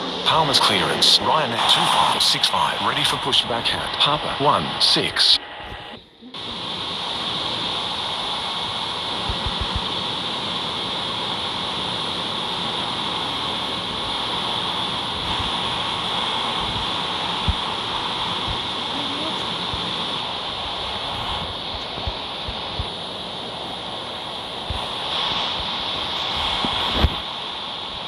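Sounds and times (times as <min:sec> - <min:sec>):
steady rushing noise: 0:00.0 - 0:28.0.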